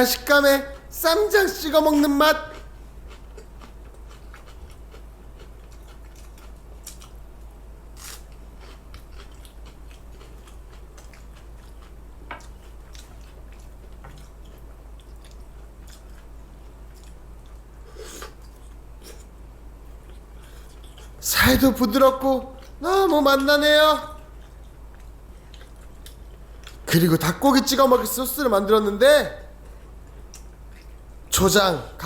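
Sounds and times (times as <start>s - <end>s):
low steady hum: 0.0s - 32.0s
person chewing crunchy food: 2.5s - 21.2s, 24.2s - 26.9s, 29.5s - 31.1s.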